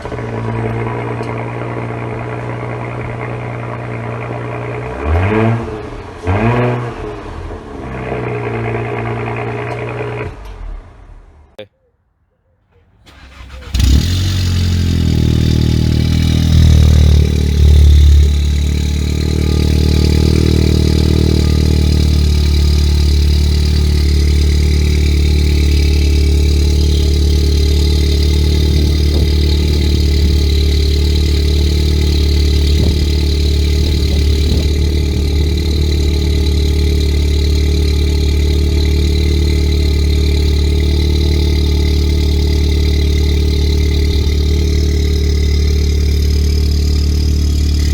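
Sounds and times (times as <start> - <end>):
car engine starting and idling: 12.8 - 47.9.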